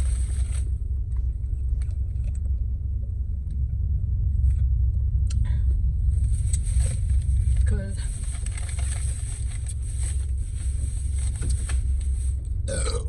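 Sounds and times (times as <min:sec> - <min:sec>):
low rumble inside car: 0:00.0 - 0:13.0
short rustle: 0:06.1 - 0:12.5.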